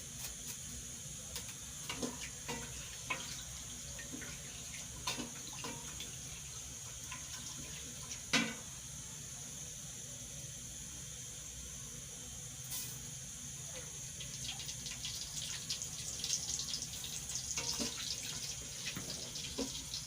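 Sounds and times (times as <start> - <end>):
steady hiss: 0.0 - 20.0
spoon knocking and scraping pot: 17.6 - 18.1.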